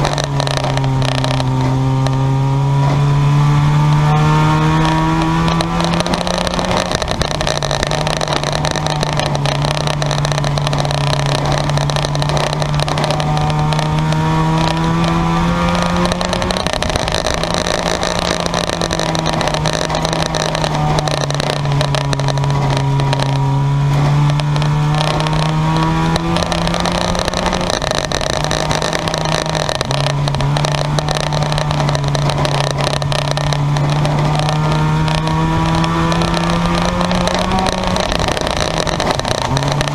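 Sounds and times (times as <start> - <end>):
race car engines running hard: 0.0 - 39.9.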